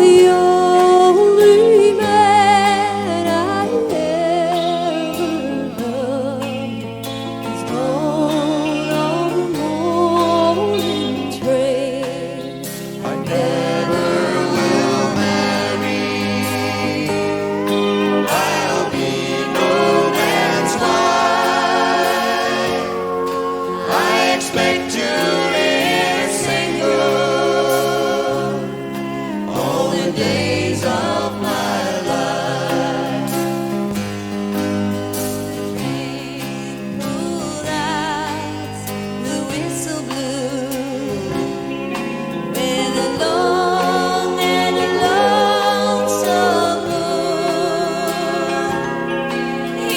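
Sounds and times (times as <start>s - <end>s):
person singing with vibrato: 0.0s - 6.9s, 7.5s - 33.7s, 42.5s - 49.9s
country band playing: 0.0s - 49.9s.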